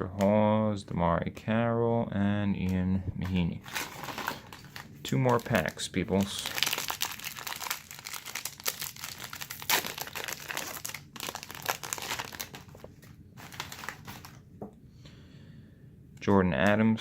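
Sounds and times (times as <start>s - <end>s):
plastic wrapper crinkling and tearing: 3.6s - 14.4s.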